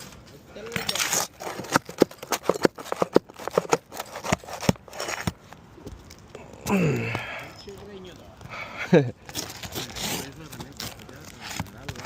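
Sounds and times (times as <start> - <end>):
roofing tool prying shingles: 0.7 - 5.5, 9.3 - 12.0.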